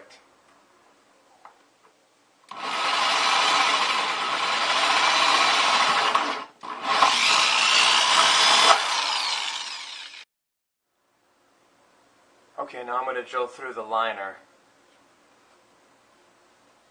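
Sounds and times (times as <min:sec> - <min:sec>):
power drill cutting bucket: 0:02.5 - 0:10.3.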